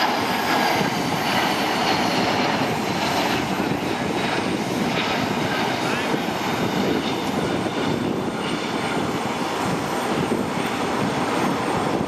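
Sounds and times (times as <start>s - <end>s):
jet engine rushing: 0.0s - 12.0s.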